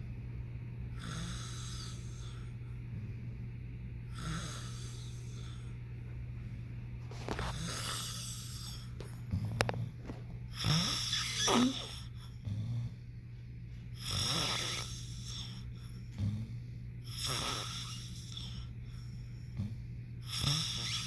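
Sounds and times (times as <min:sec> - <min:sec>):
rasping snoring: 0:00.9 - 0:03.1, 0:04.1 - 0:05.8, 0:07.3 - 0:13.1, 0:14.0 - 0:21.0.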